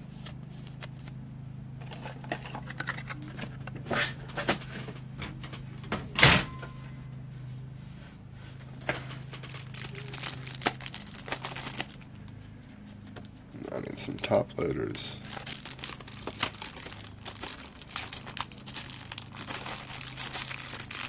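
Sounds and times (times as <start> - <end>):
low hum: 0.0 - 21.0
plastic packaging crinkling: 8.7 - 12.4, 13.7 - 21.0.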